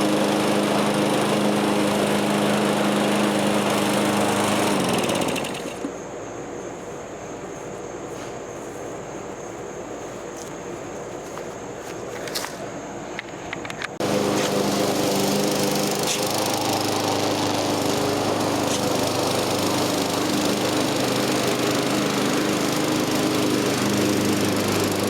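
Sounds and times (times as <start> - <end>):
lawn mower engine running: 0.0 - 6.0, 14.0 - 25.0.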